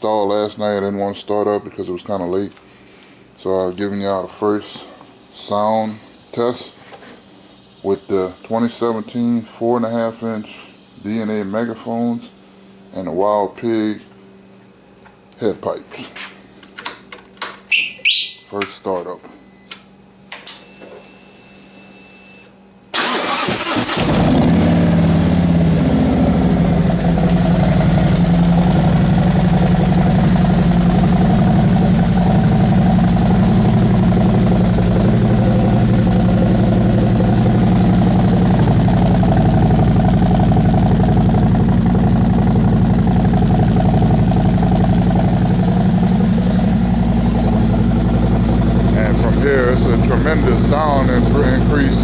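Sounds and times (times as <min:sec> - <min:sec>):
motorcycle engine cranking: 0:23.0 - 0:24.6
motorcycle engine rumbling idle: 0:24.6 - 0:52.0.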